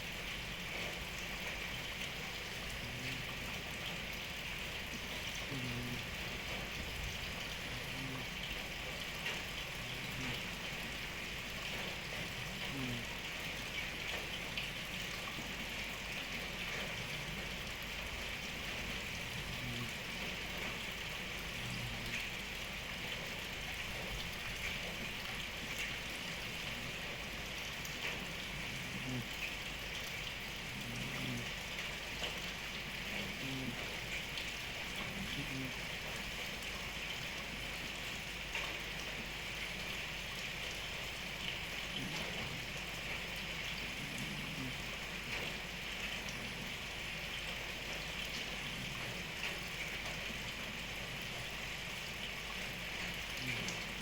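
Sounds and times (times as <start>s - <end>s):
steady rain pattering: 0.0s - 54.0s
cat snoring faintly: 2.7s - 3.6s, 5.3s - 6.7s, 7.6s - 8.9s, 9.7s - 11.1s, 11.7s - 13.5s, 18.7s - 20.8s, 28.0s - 29.6s, 30.6s - 32.4s, 33.0s - 34.2s, 34.9s - 35.9s, 41.9s - 46.8s, 48.4s - 49.6s, 53.4s - 54.0s.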